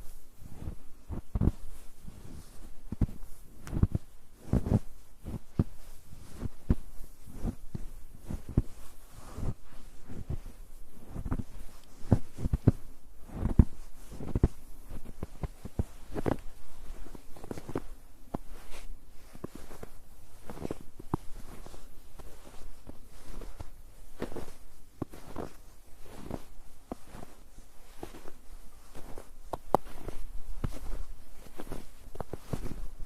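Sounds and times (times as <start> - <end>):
footsteps on snow: 0.0 - 33.0.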